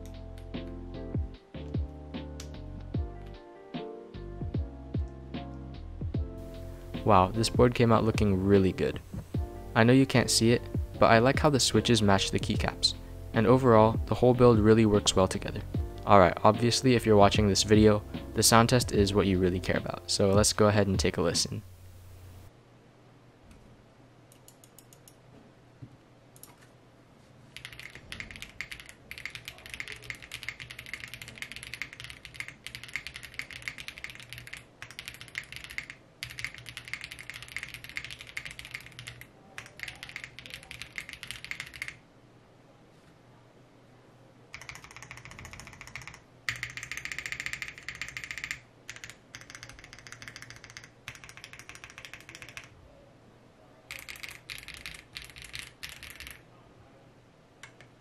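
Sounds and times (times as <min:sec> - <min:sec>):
typing on mechanical keyboard: 0:27.6 - 0:42.0, 0:44.5 - 0:52.7, 0:53.9 - 0:56.4.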